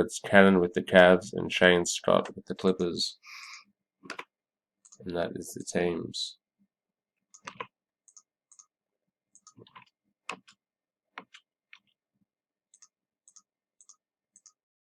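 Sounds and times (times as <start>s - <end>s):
computer mouse clicking: 4.0s - 5.0s, 7.3s - 8.7s, 9.3s - 10.6s, 12.7s - 14.6s.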